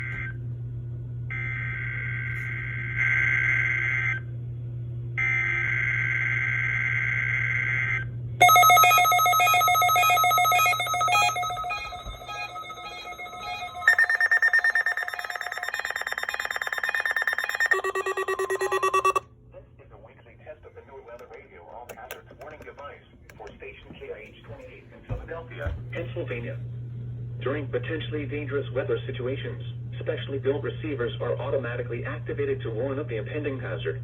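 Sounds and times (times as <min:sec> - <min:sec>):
low hum: 0:08.4 - 0:19.2
pulsing electronic alert tone: 0:08.4 - 0:19.2
buzzy digital data bursts: 0:11.5 - 0:19.2.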